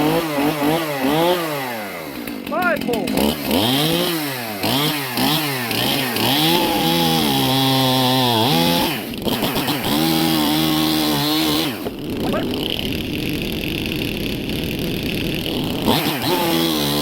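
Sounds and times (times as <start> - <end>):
chainsaw revving: 0.0 - 17.0.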